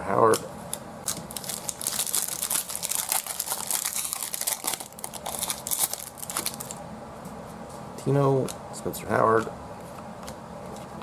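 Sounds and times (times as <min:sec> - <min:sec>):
foil wrapper crinkling: 0:01.1 - 0:06.8.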